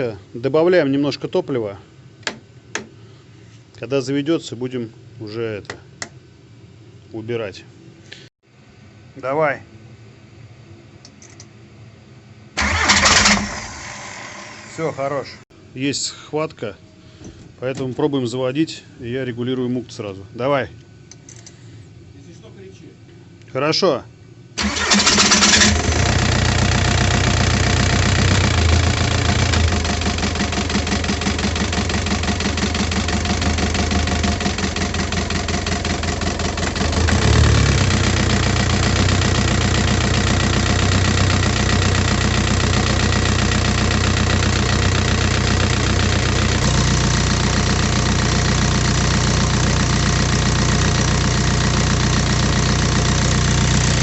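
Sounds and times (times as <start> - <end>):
diesel engine starting and clattering: 12.6 - 14.9, 24.6 - 54.0.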